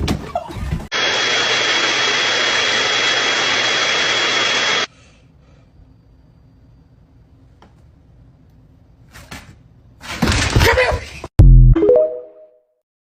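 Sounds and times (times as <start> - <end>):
rushing hiss with whistle: 0.9 - 5.1.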